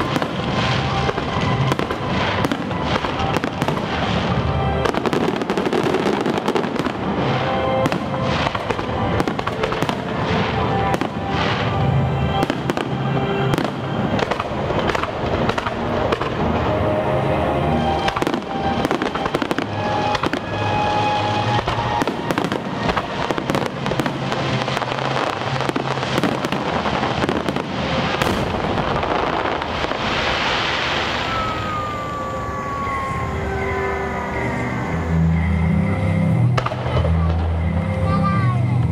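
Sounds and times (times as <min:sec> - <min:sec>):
music over loudspeakers: 0:00.0 - 0:30.3, 0:31.5 - 0:38.9
fireworks bursting and crackling: 0:00.0 - 0:38.9
falling whistle-like tone: 0:30.8 - 0:36.3.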